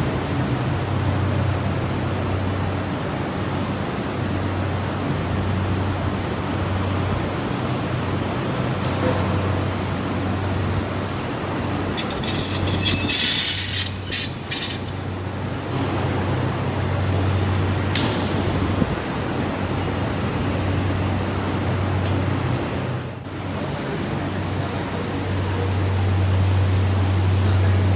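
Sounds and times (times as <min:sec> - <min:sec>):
high metallic squeal: 0:12.0 - 0:16.1.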